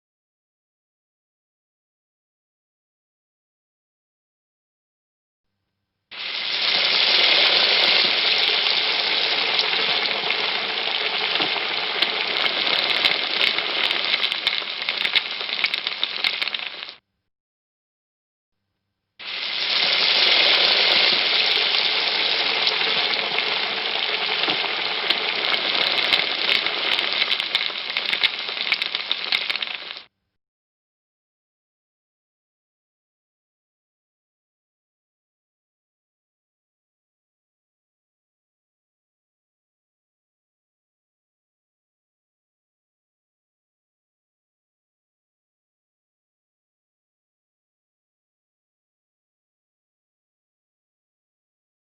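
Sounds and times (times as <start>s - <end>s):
food frying with crackles: 6.1s - 17.0s, 19.2s - 30.1s.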